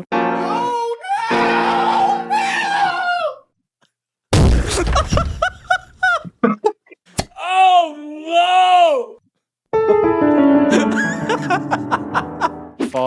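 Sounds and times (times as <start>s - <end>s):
yelps: 0.4s - 3.4s
drawn-out scream: 1.0s - 3.5s
heavy crash: 4.4s - 5.7s.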